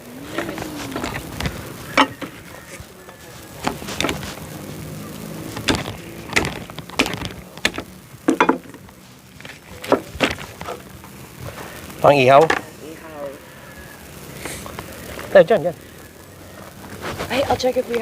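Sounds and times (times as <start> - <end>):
sharp knocks and clatters: 5.6 - 8.8.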